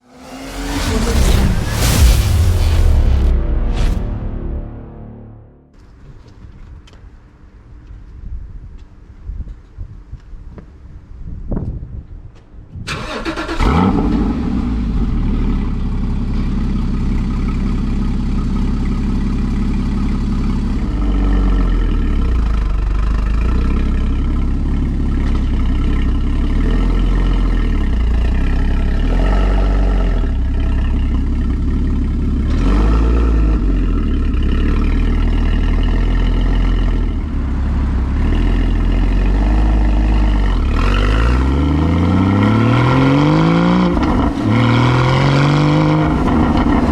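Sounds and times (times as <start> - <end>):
car engine starting and revving: 0.0 - 5.1, 12.9 - 17.7, 20.8 - 46.9.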